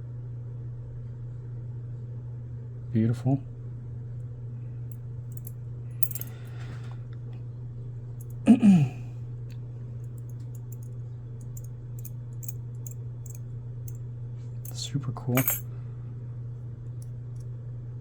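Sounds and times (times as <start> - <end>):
steady low hum: 4.8 - 7.0
metal tools clicking and tinking: 5.4 - 6.4, 15.4 - 15.6.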